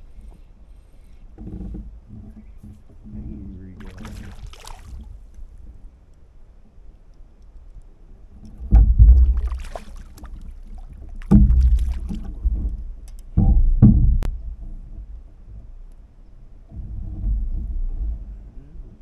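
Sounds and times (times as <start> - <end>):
loud low thumps with rumble: 8.6 - 9.8, 11.2 - 15.7.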